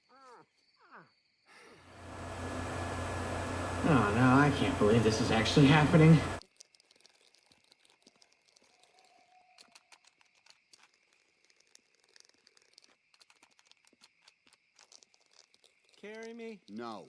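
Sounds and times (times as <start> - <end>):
faint steady hiss: 1.9 - 6.4.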